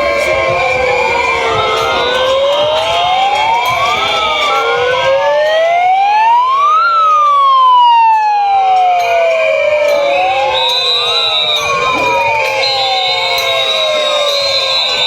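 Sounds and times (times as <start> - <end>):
sirens wailing: 0.0 - 15.0.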